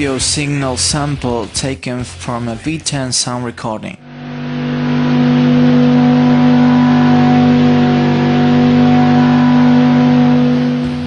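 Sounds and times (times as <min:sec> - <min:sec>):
engine hum at constant pitch: 0:04.0 - 0:11.0.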